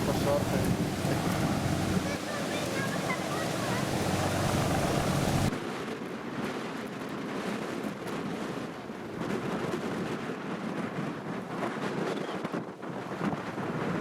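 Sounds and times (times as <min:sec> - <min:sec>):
boat engine humming: 0:00.0 - 0:05.5
faint harbour noise: 0:00.0 - 0:05.5
wind buffeting microphone: 0:00.0 - 0:14.0.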